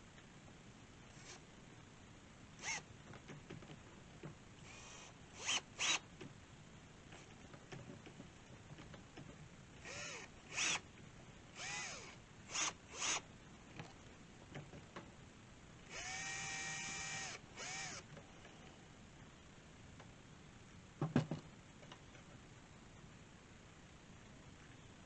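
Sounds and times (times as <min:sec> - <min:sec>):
power drill bursts: 0:02.6 - 0:02.8, 0:04.7 - 0:06.0, 0:09.8 - 0:10.8, 0:11.6 - 0:13.2, 0:15.9 - 0:18.0.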